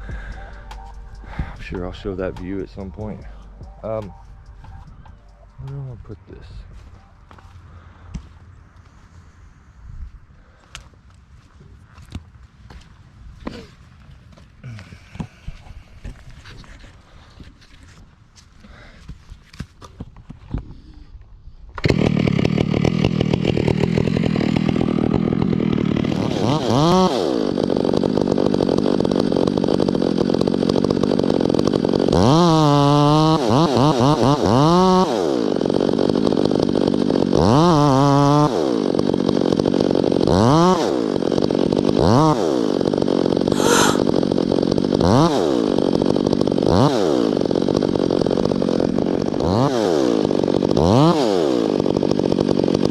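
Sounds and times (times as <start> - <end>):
chainsaw revving: 21.8 - 52.9.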